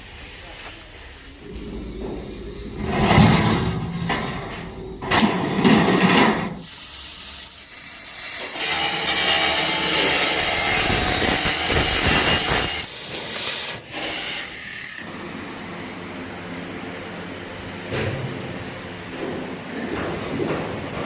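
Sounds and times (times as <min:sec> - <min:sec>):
steady tool hiss: 0:00.0 - 0:02.8, 0:06.6 - 0:15.0.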